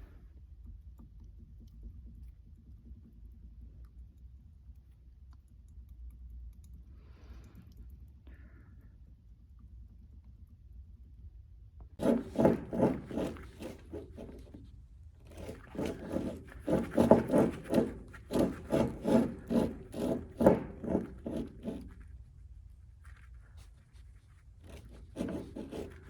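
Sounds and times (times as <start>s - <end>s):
differential grinding: 12.0s - 22.2s, 24.6s - 26.0s.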